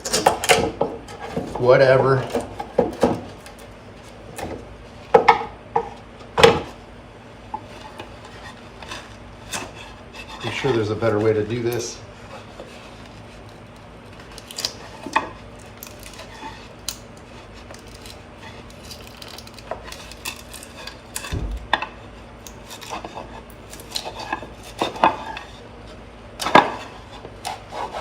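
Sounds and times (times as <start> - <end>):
low thump: 21.3 - 21.8.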